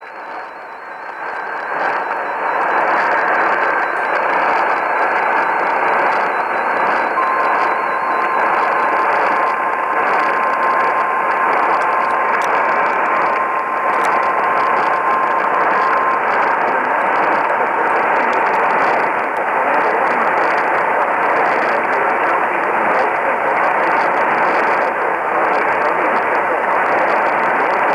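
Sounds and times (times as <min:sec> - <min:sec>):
faint whistling tones: 0:00.0 - 0:19.1
radio static hiss and crackle: 0:00.0 - 0:27.9
thin steady whistle: 0:00.0 - 0:27.9.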